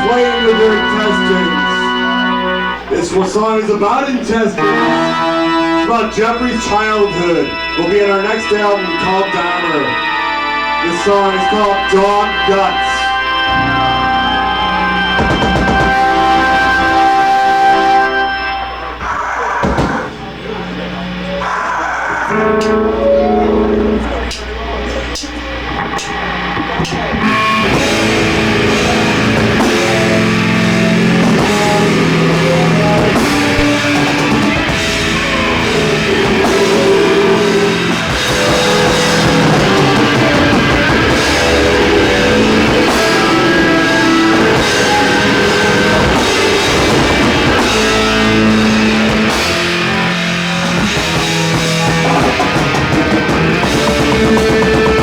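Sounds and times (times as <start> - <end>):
heavy metal band playing live: 0.0 - 55.0.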